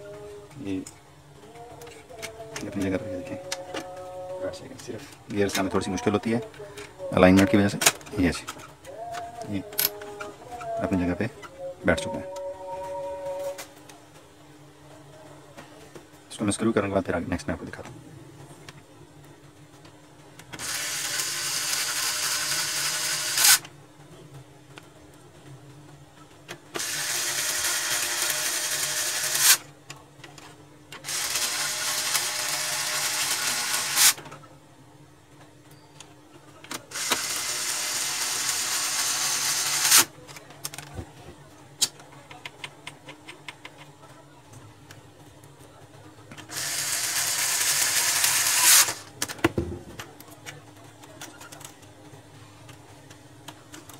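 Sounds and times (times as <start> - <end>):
electric screwdriver whirring: 37.0 - 40.1.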